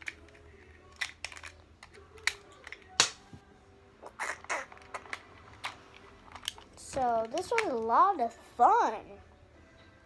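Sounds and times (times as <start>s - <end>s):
plastic toy pieces clicking: 0.0s - 3.2s, 4.6s - 7.9s.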